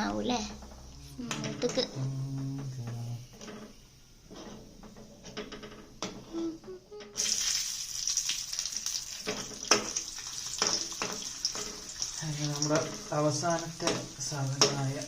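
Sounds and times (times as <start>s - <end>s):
food sizzling in hot oil: 7.2s - 15.0s.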